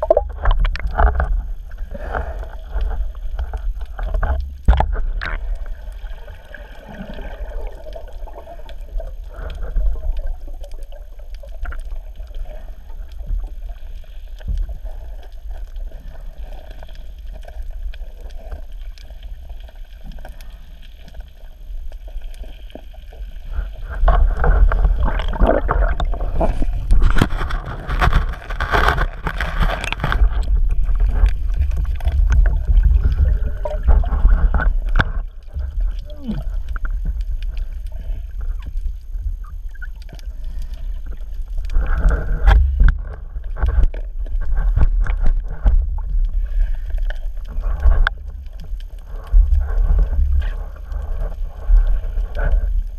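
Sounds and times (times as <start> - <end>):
water gurgling and churning: 0.0 - 20.7, 21.4 - 52.9
crackling and splashing: 0.0 - 52.9
low rumble: 23.4 - 52.9.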